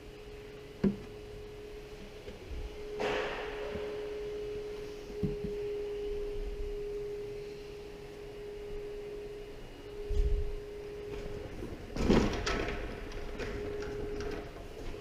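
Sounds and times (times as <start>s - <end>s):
steady single-pitched tone: 0.0s - 12.0s.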